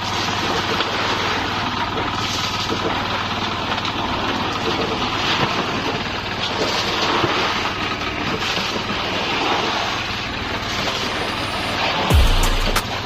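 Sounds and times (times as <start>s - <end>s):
engine running steadily: 0.0s - 13.0s.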